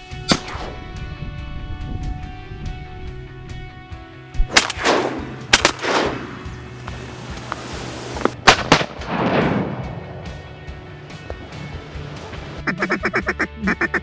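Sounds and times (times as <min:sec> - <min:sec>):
shotgun shots echoing: 0:04.4 - 0:09.4.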